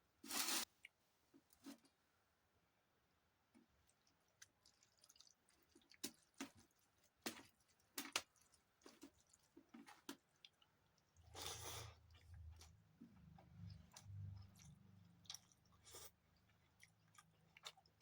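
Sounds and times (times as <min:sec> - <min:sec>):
wet squelching of food mixed: 0:03.7 - 0:18.0
close-up chewing: 0:03.8 - 0:18.0.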